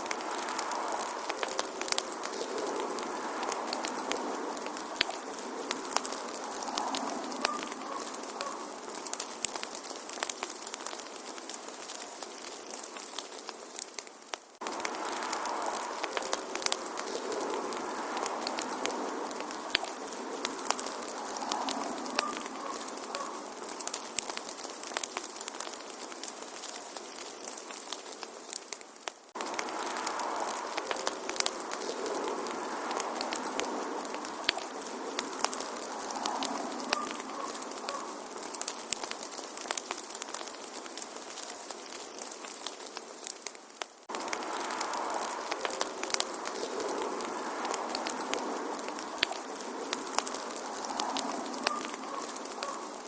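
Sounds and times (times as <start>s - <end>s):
wood fire crackling and popping: 0.0s - 53.0s.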